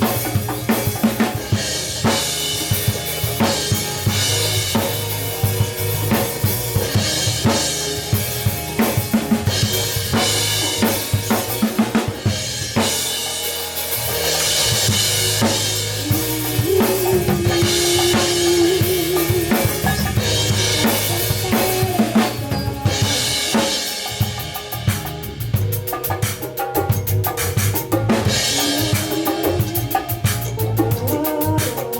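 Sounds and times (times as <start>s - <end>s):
low bass notes: 0.0s - 23.6s
drum kit beat: 0.0s - 31.9s.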